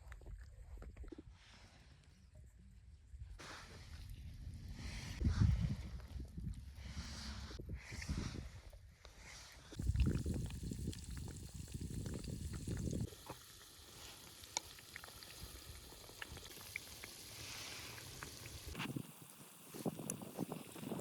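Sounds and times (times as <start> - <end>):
deep-frying sizzle and pops: 9.8 - 21.0.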